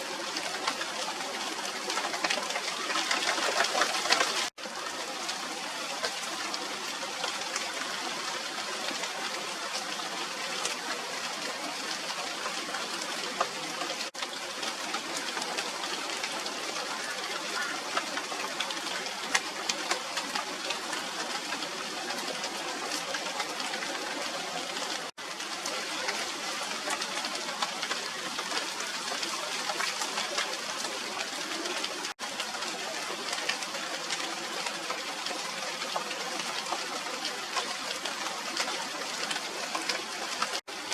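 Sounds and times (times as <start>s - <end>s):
rain falling on leaves: 0.0s - 40.9s.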